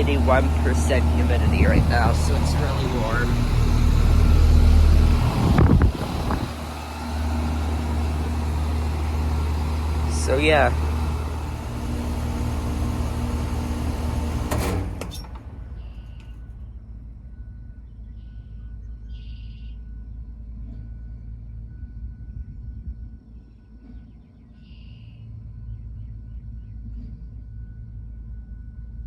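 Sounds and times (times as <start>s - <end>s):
air conditioner unit humming: 0.0s - 15.4s
air conditioner shutoff click: 0.0s - 16.4s
low rumble: 0.0s - 24.3s.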